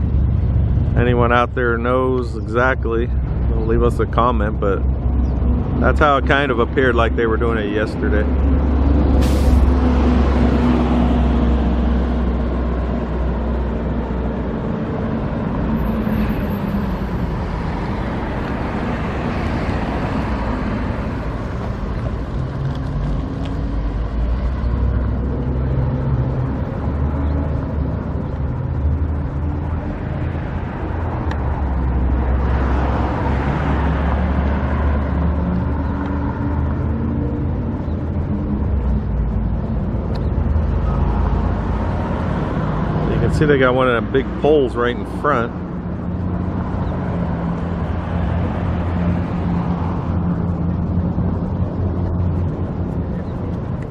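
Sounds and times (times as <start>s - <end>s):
traffic rumble: 0.0s - 53.9s
vehicles passing by: 0.0s - 53.9s.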